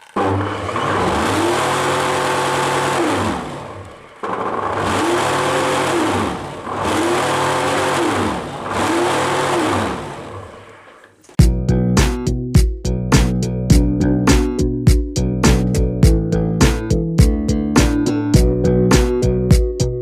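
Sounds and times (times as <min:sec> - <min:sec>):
vacuum cleaner motor humming: 0:00.0 - 0:11.2.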